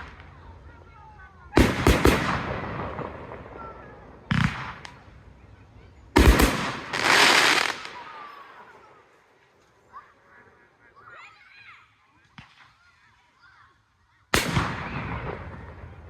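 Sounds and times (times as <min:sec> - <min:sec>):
firework bangs: 0:00.0 - 0:08.9, 0:14.3 - 0:16.0
firework hissing: 0:06.2 - 0:09.3.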